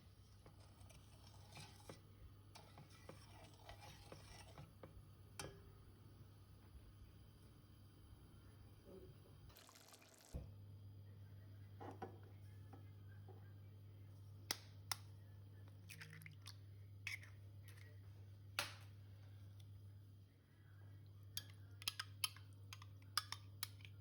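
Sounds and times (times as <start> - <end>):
steady low hum: 0.0 - 9.6.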